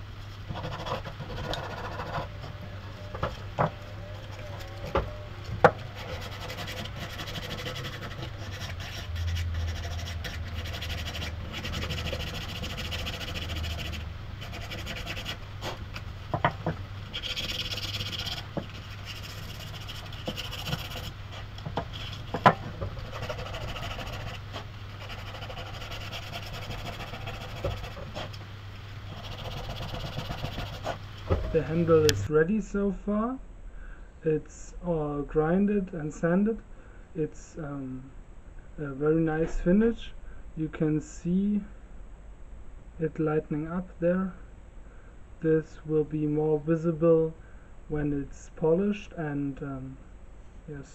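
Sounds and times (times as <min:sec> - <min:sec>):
low steady hum: 0:00.0 - 0:50.9
abrasive rubbing on wooden handle: 0:00.5 - 0:15.8, 0:16.4 - 0:28.4, 0:29.1 - 0:32.3.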